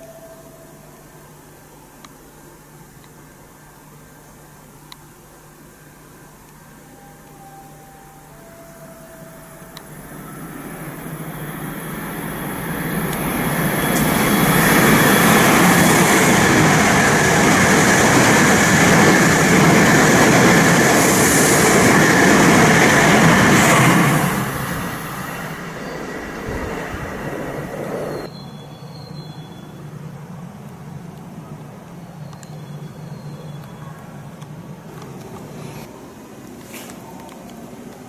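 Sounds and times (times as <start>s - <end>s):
train passing at speed: 6.8s - 36.6s.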